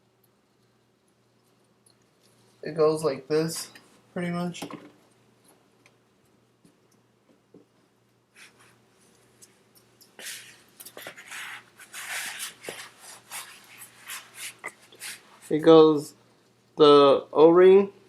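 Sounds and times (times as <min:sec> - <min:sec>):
metal parts scraping and rubbing: 0:10.2 - 0:15.4.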